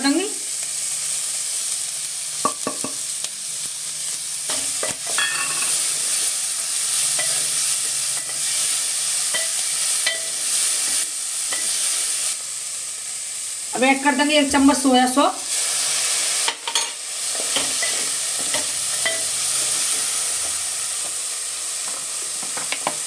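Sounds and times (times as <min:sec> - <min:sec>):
chicken sizzling in a pan: 0:00.0 - 0:23.0
spoon scraping a pan: 0:04.5 - 0:06.2, 0:07.0 - 0:12.1, 0:16.4 - 0:21.2.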